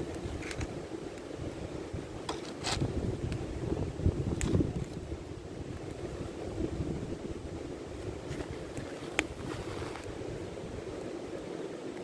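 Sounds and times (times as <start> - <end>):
wind on microphone: 0.0 - 12.0
campfire pop: 4.3 - 5.1.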